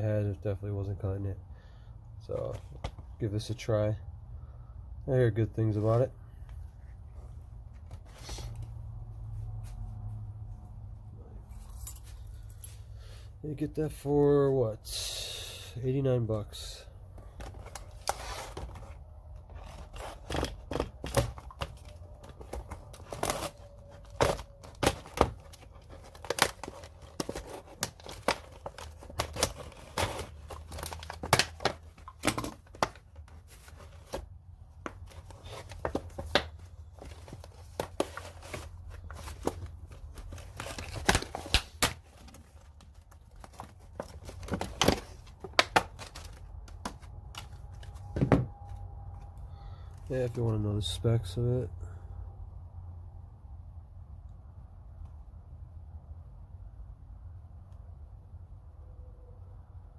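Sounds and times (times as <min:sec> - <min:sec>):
sharp clicks and rustles: 0:17.2 - 0:49.4
cardboard and plastic tearing: 0:17.3 - 0:48.0.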